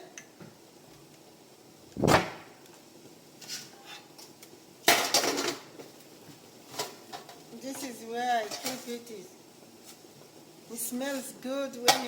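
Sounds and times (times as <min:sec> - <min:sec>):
kitchenware dull thump: 0:02.0 - 0:02.5.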